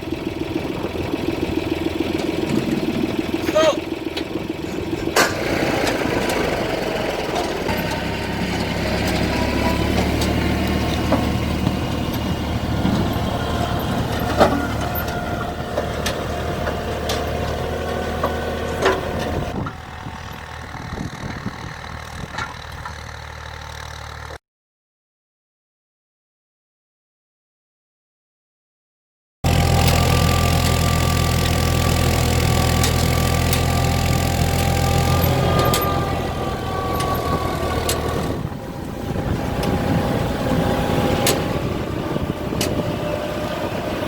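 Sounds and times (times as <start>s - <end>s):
tractor engine running: 0.0s - 24.4s, 29.4s - 44.0s
sharp clicks and knocks: 32.6s - 33.9s.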